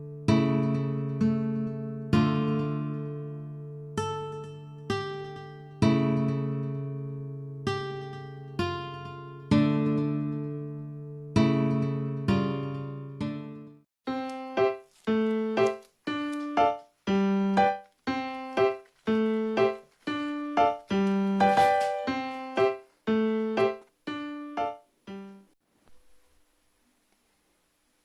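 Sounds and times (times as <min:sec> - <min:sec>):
piano music: 0:12.4 - 0:25.6.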